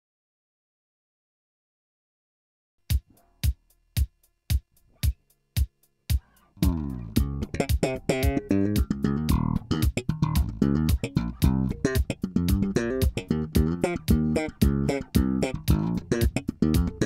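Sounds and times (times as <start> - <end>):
plucked bass and guitar music: 6.2 - 17.0.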